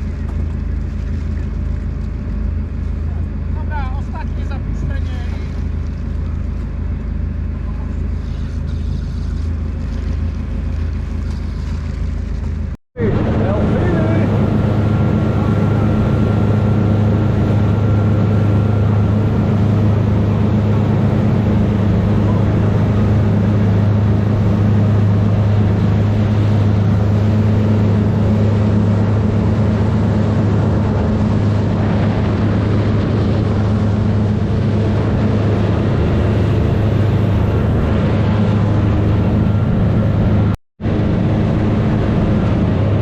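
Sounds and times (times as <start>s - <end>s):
boat engine humming: 0.0s - 43.0s.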